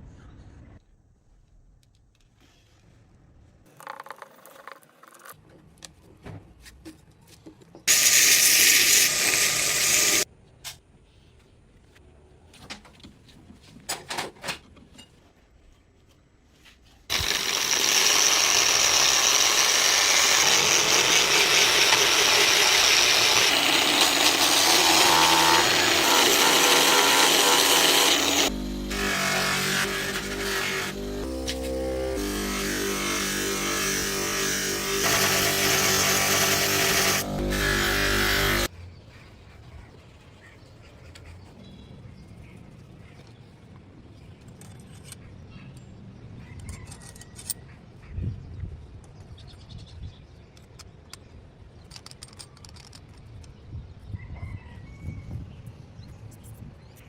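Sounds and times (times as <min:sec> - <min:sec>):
power tool whining: 0:07.9 - 0:10.2, 0:17.1 - 0:38.7.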